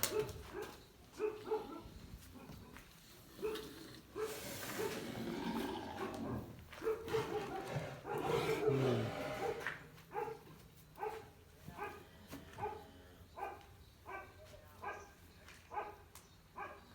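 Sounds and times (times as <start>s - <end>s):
cow grunting breaths: 3.0s - 9.8s.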